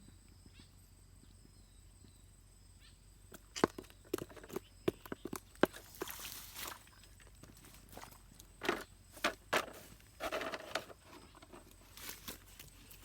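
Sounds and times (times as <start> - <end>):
rustle: 5.7 - 13.0.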